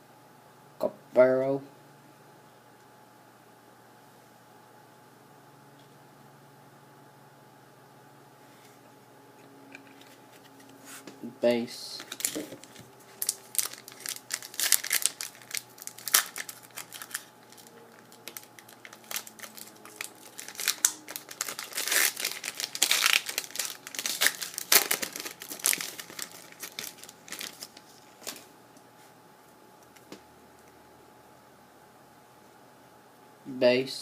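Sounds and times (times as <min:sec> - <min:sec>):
foil wrapper crinkling and tearing: 0:12.0 - 0:28.5.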